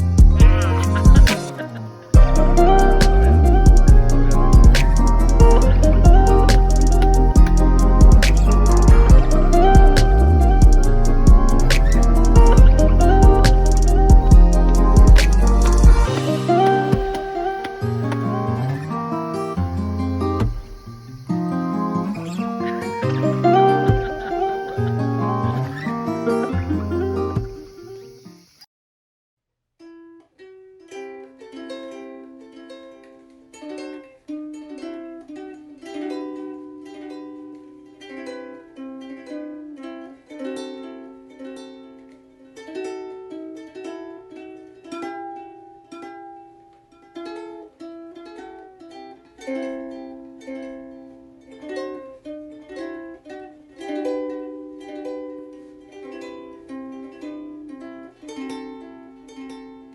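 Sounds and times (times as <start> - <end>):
ukulele melody: 0.0 - 27.8, 29.8 - 59.9.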